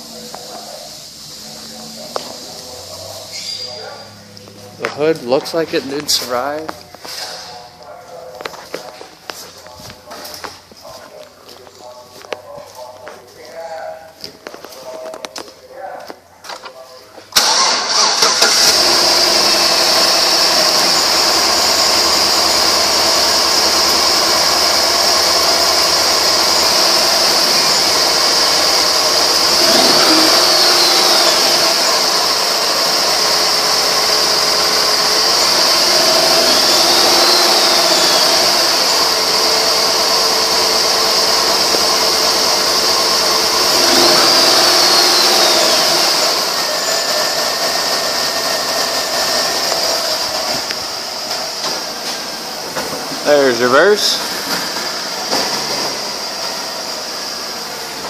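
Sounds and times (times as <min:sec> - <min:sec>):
car engine idling: 0:00.0 - 0:15.8, 0:17.3 - 0:58.0
high whine: 0:26.0 - 0:32.7.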